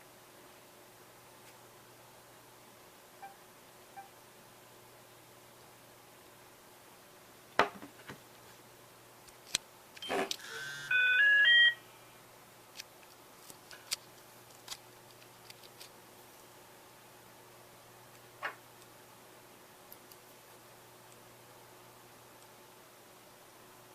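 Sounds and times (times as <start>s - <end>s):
phone beeps rising in pitch: 10.0s - 11.8s.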